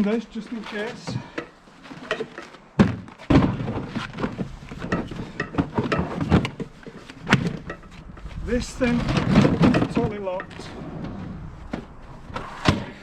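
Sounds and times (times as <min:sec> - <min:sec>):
cases knocking and rattling: 0:00.9 - 0:12.9
plastic tool case thunk: 0:02.1 - 0:06.7.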